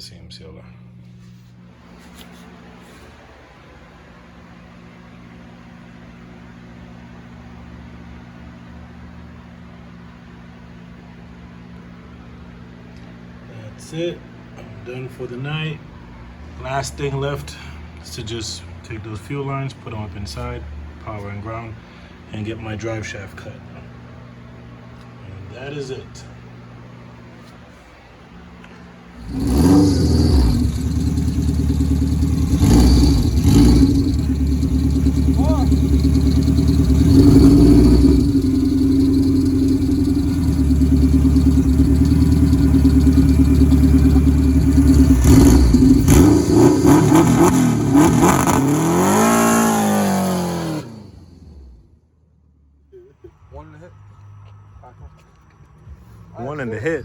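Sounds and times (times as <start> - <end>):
machine humming: 28.0 - 51.8
car engine running loudly: 29.2 - 51.8.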